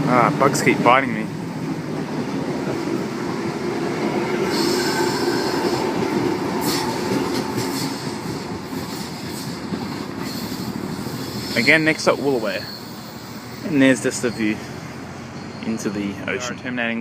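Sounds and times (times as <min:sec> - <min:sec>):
electric train rumbling: 0:00.0 - 0:17.0
high-pitched wheel squeal: 0:04.4 - 0:16.4.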